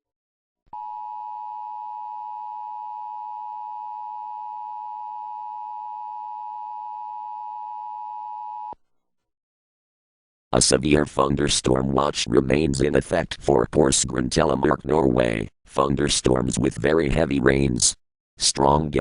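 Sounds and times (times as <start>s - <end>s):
two-tone alarm: 0.8s - 8.8s.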